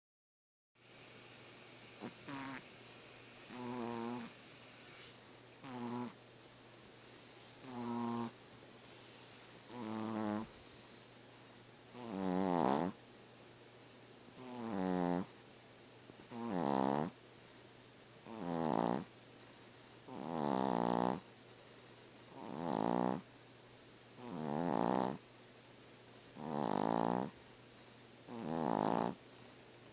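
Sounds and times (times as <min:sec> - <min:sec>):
dog snoring: 0:01.8 - 0:06.2, 0:07.6 - 0:08.4, 0:09.6 - 0:10.7, 0:11.9 - 0:13.0, 0:14.4 - 0:15.4, 0:16.2 - 0:17.2, 0:18.2 - 0:19.1, 0:20.0 - 0:21.3, 0:22.2 - 0:23.3, 0:24.2 - 0:25.2, 0:26.3 - 0:27.5, 0:28.2 - 0:29.3.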